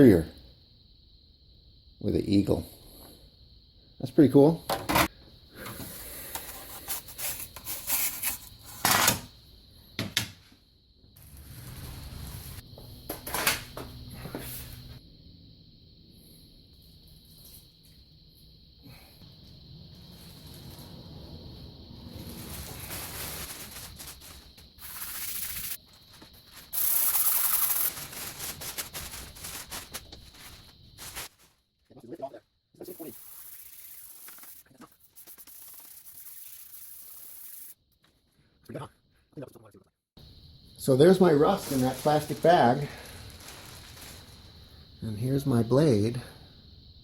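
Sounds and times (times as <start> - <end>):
hiss: 22.1 - 25.8, 26.6 - 29.5, 32.9 - 37.8.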